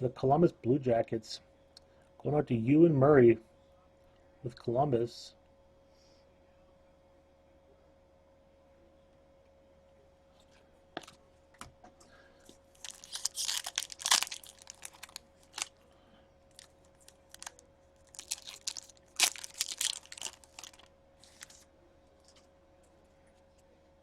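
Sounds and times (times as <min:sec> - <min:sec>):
faint steady hum: 0:00.0 - 0:24.0
foil wrapper tearing and crinkling: 0:12.8 - 0:15.7, 0:16.5 - 0:21.6.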